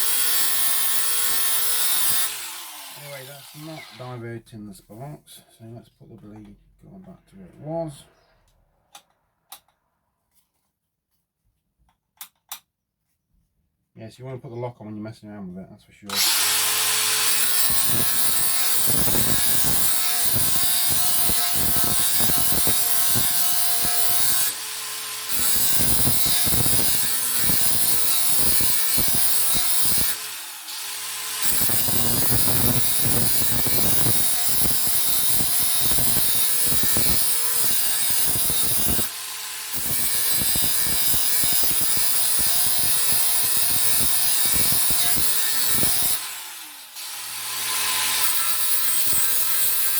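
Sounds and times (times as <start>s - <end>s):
angle grinder grinding steel: 0.0s - 4.2s, 16.1s - 49.9s.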